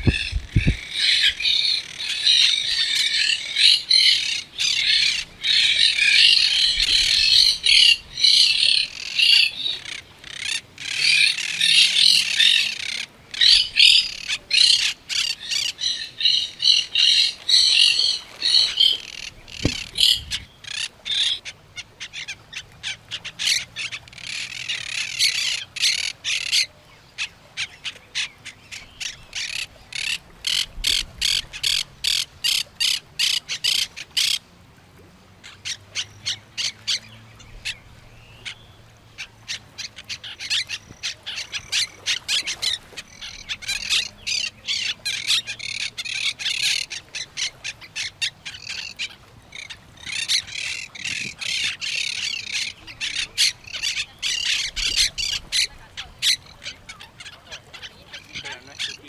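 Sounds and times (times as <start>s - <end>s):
birds chirping: 0.0s - 34.4s, 35.4s - 59.0s
parrots squawking: 39.5s - 59.0s.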